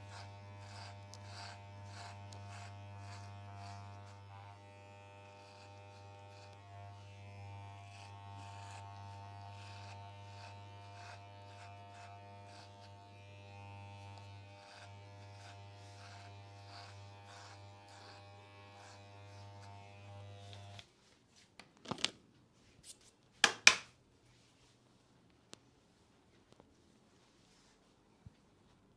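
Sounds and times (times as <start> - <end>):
electric hair trimmer buzzing: 0.0 - 20.8
trimmer cutting through hair: 0.0 - 20.8
sharp clacks: 23.4 - 23.9.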